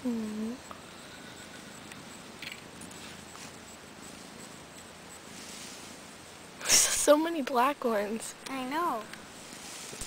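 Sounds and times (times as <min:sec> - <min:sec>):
faint background hiss: 0:00.0 - 0:10.0
tiny clicks: 0:01.9 - 0:03.0
soft rustle: 0:02.1 - 0:07.1, 0:08.9 - 0:10.0.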